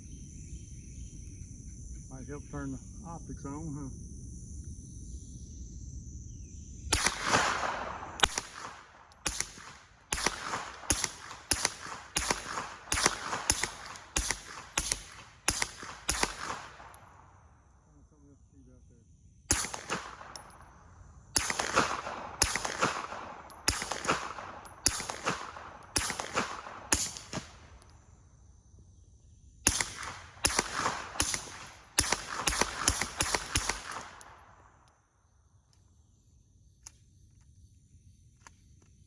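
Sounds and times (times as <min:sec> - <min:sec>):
suppressed pistol shots: 0:06.9 - 0:17.2, 0:19.5 - 0:20.6, 0:21.4 - 0:27.9, 0:29.7 - 0:34.6.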